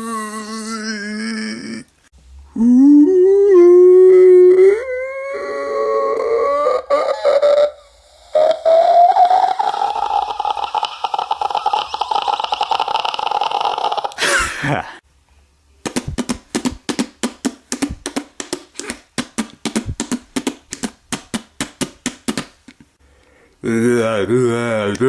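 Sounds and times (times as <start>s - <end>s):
wavering voiced drone: 2.5s - 14.2s
quick percussive mouth clicks: 15.8s - 23.4s.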